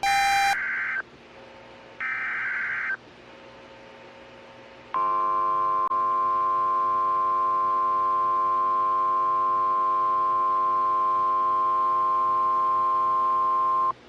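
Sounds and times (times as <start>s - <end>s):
steady alarm tone: 0.0s - 0.6s.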